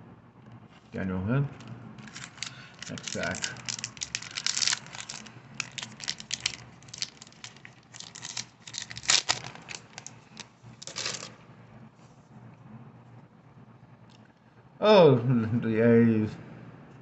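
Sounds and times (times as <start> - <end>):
foil wrapper crinkling: 1.6 - 11.3
foil wrapper ripping: 1.6 - 11.3.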